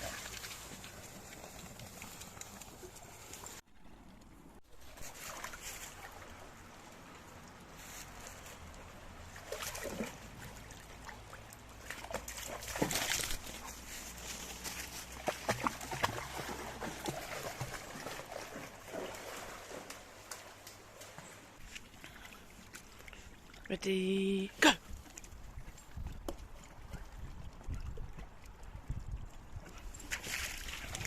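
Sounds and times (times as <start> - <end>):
dog splashing through water: 0.0 - 3.6, 9.2 - 23.3, 29.9 - 31.0.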